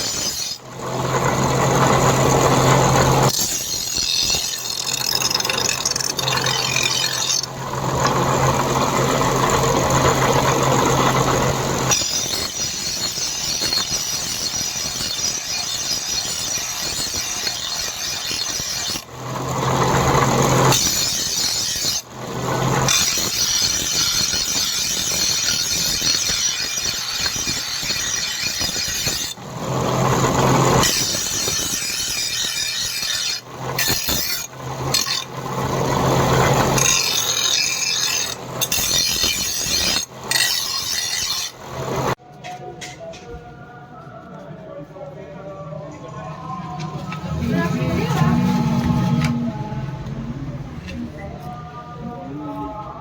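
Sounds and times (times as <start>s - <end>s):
abrasive tool rasping metal: 0.0s - 42.2s
low hum: 45.5s - 53.0s.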